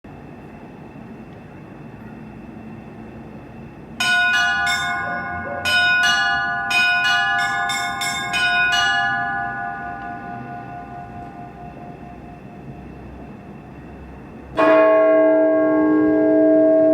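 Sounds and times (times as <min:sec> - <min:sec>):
small high-pitched bells ringing: 0:04.0 - 0:12.6.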